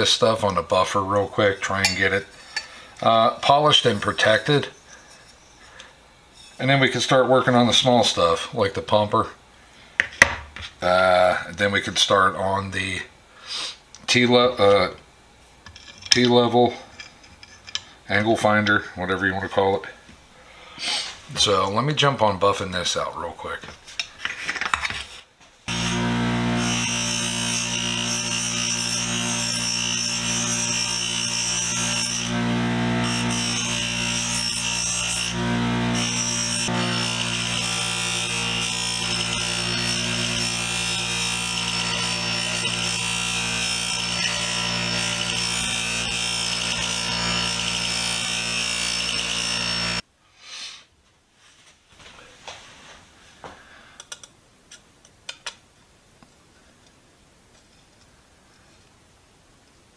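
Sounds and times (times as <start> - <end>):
buffing wheel motor humming: 25.7 - 50.0.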